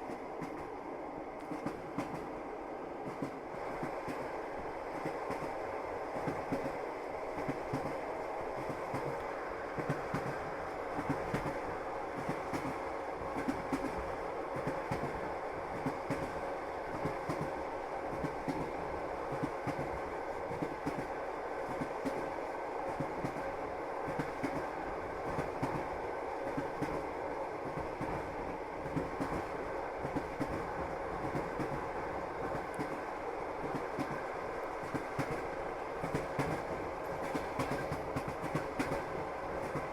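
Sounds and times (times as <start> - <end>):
train rumbling on track: 0.0 - 39.9.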